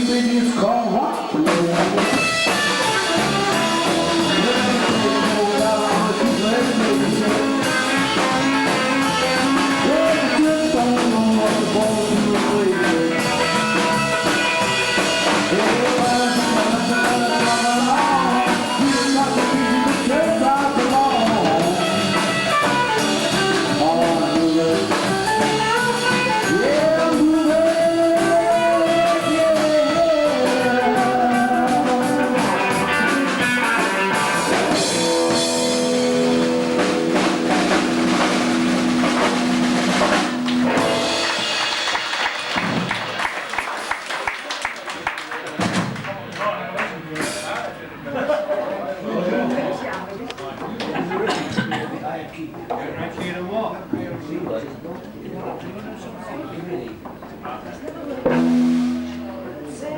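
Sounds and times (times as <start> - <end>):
electric guitar: 0.0 - 43.2, 58.0 - 59.9
drum kit: 0.0 - 44.3, 47.2 - 47.8, 58.2 - 59.9
rockabilly band playing: 0.0 - 48.4, 56.9 - 59.9.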